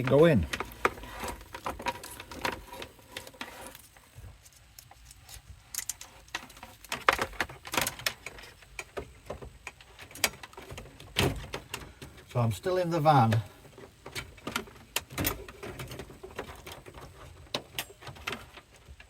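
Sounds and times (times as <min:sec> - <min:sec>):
plastic and cable rattling: 0:00.0 - 0:12.2.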